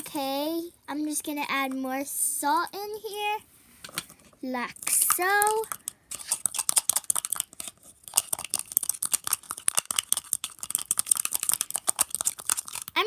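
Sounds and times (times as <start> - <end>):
sticky slime crackling in bowl: 4.6 - 13.0.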